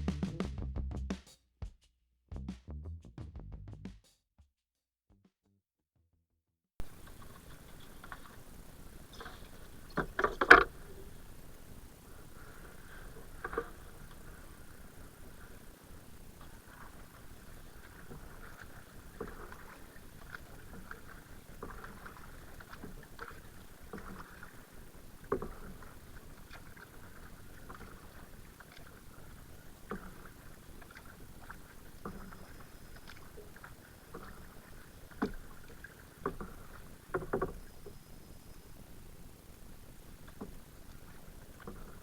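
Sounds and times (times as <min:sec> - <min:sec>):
kayak knocks: 0:06.8 - 0:11.5, 0:12.2 - 0:15.6, 0:16.4 - 0:38.0, 0:40.2 - 0:42.0
paddle in water: 0:06.8 - 0:42.0.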